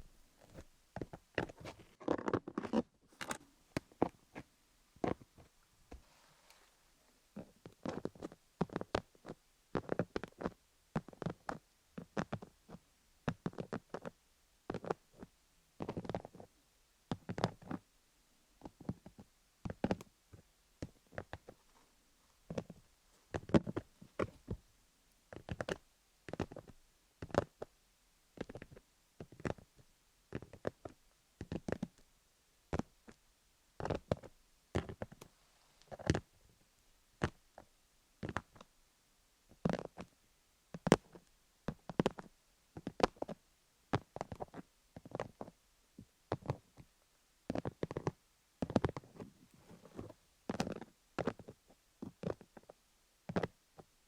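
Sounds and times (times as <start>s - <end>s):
fingernails tapping and scratching microphone: 0.4s - 6.0s.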